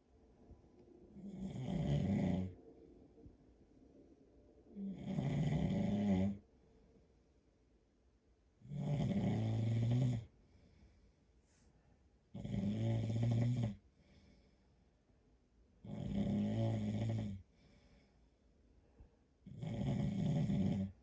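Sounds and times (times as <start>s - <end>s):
man snoring: 1.2s - 2.6s, 4.8s - 6.4s, 8.7s - 10.3s, 12.4s - 13.8s, 15.8s - 17.4s, 19.5s - 21.0s.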